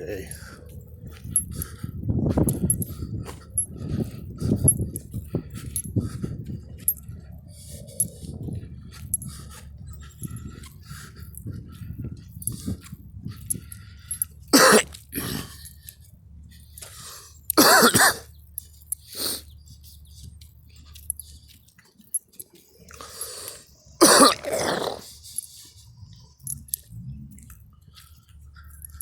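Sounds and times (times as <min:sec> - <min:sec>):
person coughing: 0:14.5 - 0:15.5, 0:17.6 - 0:18.3, 0:24.0 - 0:25.0.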